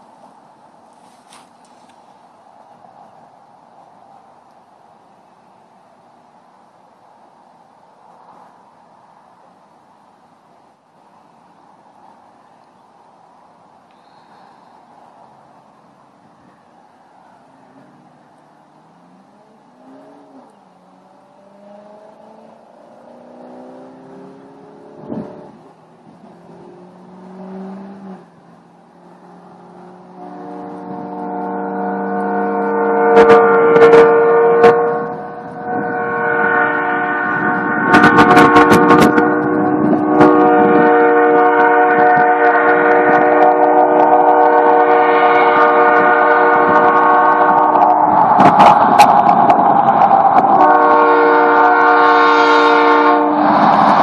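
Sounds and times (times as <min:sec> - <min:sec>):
wind buffeting microphone: 0:23.8 - 0:54.0
train horn chord: 0:29.7 - 0:48.4, 0:50.4 - 0:54.0.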